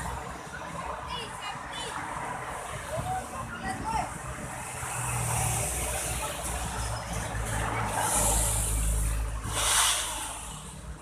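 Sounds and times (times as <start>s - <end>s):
burst of hiss: 9.4s - 10.8s.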